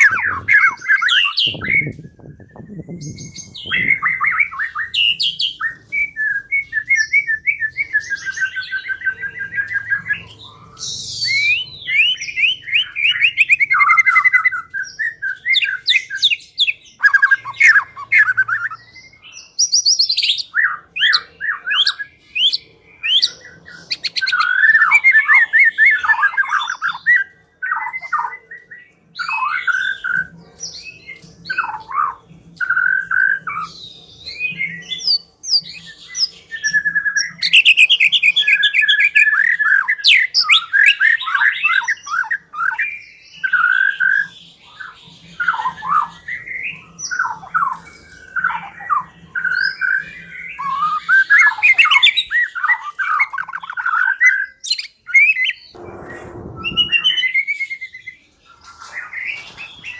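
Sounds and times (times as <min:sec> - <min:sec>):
bird singing whistled phrases: 0:00.0 - 0:10.2.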